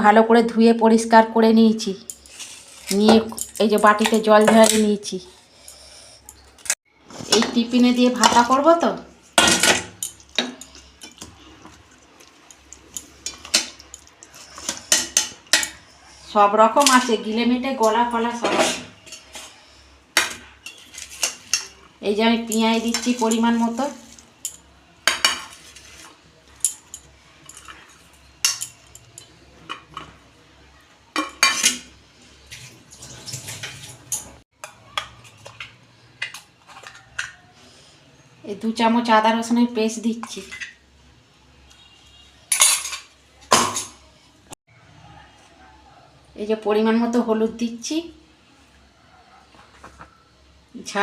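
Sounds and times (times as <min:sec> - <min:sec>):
spoon scraping bowl: 0:02.1 - 0:04.3, 0:20.6 - 0:21.8.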